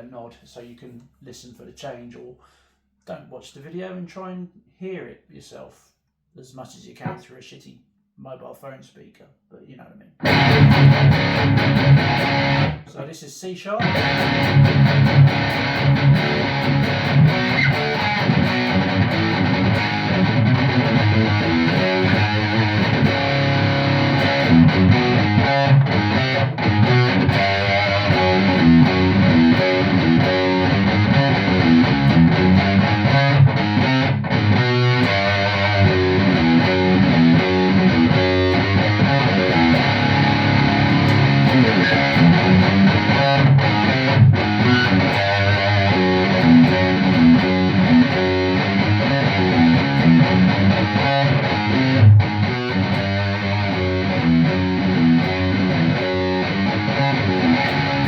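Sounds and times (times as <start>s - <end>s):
distorted electric guitar riffs: 10.2s - 12.9s, 13.8s - 58.0s.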